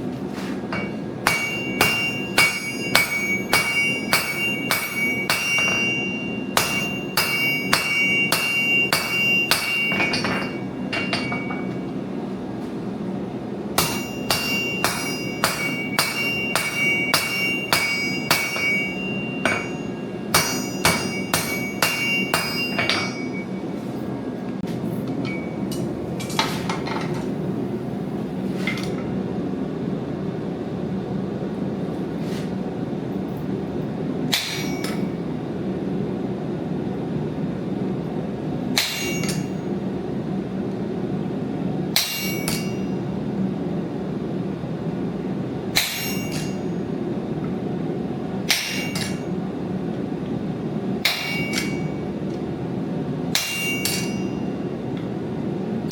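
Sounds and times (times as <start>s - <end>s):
hammer striking metal on anvil: 0.7s - 11.9s, 13.8s - 23.6s, 25.1s - 27.2s, 34.3s - 35.1s, 38.8s - 39.6s, 41.9s - 43.0s, 45.8s - 46.8s, 48.5s - 49.4s, 51.0s - 52.0s, 53.3s - 54.6s.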